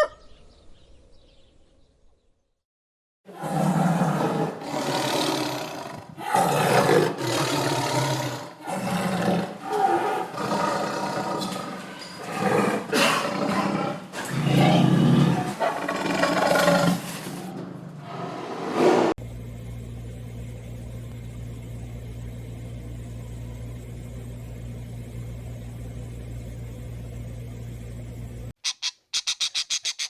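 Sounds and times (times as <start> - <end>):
tiger roaring: 3.3 - 17.6.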